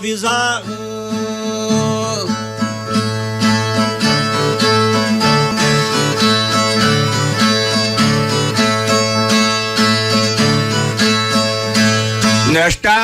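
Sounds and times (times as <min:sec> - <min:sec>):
plucked viola rhythmic figure: 0:00.0 - 0:12.7
steady bass note: 0:01.8 - 0:12.5.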